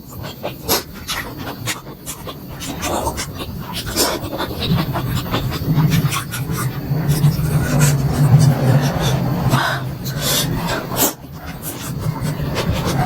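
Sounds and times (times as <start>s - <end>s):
heavy breathing: 3.9s - 13.0s.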